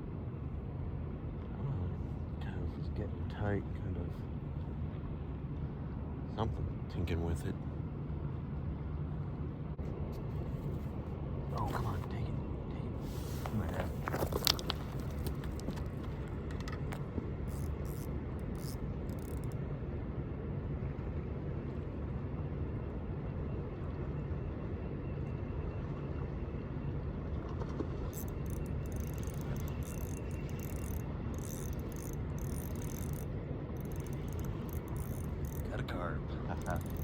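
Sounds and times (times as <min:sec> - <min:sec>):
steady low rumble: 0:00.0 - 0:26.0
fishing reel clicking: 0:17.5 - 0:19.6, 0:28.1 - 0:35.7, 0:36.6 - 0:37.0.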